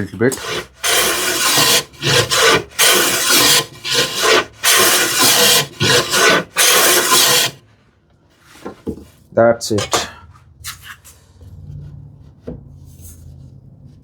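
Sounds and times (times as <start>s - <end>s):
hand plane scraping wood: 0.0s - 7.6s.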